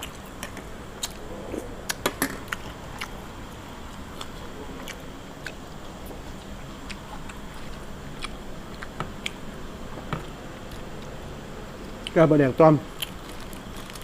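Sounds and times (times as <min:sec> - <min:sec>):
chewing clicks and crunches: 0:06.4 - 0:09.4, 0:12.9 - 0:14.0.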